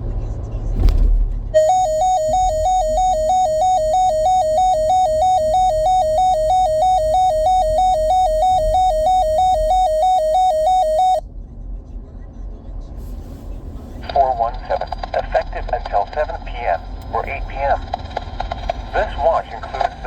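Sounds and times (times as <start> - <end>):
warbling electronic alert alarm: 1.6 - 11.2.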